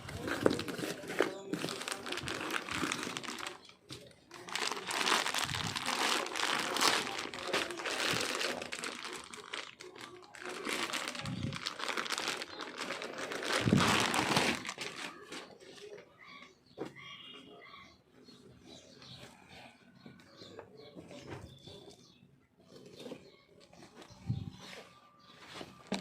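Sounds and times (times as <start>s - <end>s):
packaging crinkling and rustling: 0.0s - 15.6s, 25.8s - 26.0s.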